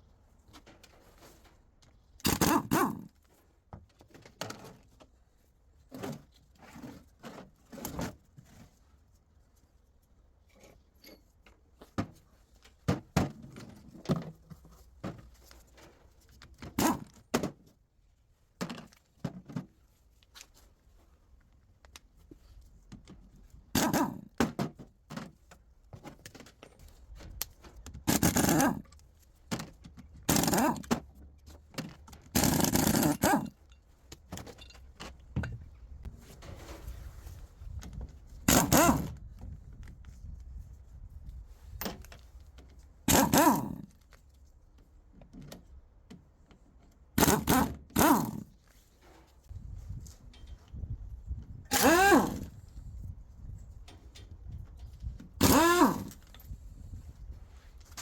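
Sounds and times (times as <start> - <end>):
clunks and knocks of metal tools: 10.4 - 17.7, 23.8 - 36.9
harsh bursts: 51.7 - 52.5, 55.4 - 56.1.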